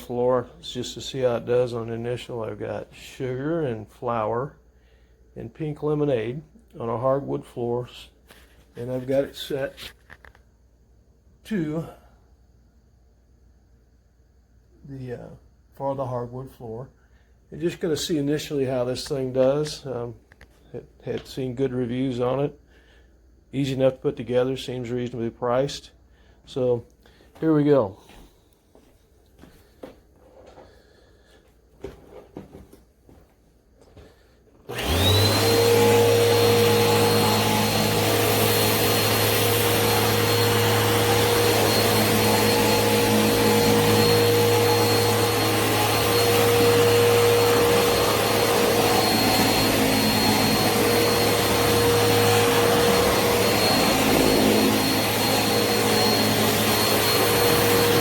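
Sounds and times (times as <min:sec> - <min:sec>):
vacuum cleaner running: 0:00.0 - 0:04.5, 0:28.0 - 0:58.0.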